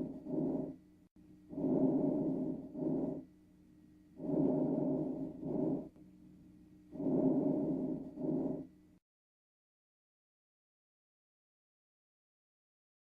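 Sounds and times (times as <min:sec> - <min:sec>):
lung breath sounds: 0:00.0 - 0:00.8, 0:01.5 - 0:03.3, 0:04.2 - 0:05.9, 0:06.9 - 0:08.7.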